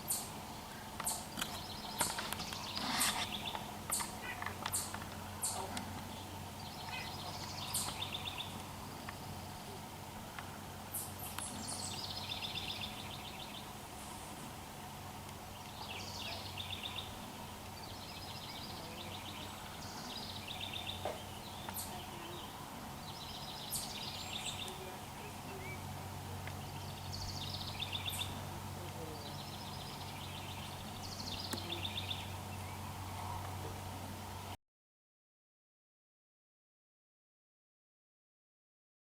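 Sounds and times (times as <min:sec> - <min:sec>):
songbird singing with trill: 0:00.0 - 0:09.5, 0:10.9 - 0:13.7, 0:15.5 - 0:33.2
steady low hum: 0:00.0 - 0:34.6.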